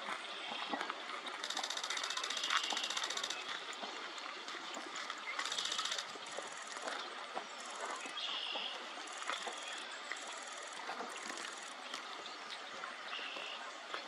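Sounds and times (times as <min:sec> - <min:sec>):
camera shutter bursts: 0:01.4 - 0:03.4, 0:05.4 - 0:06.1.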